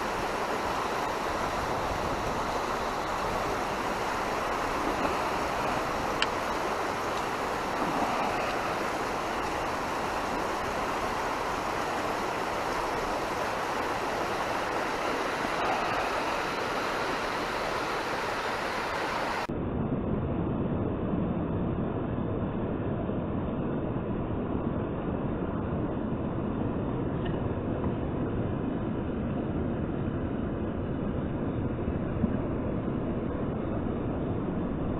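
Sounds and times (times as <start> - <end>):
river water rushing: 0.0 - 19.5.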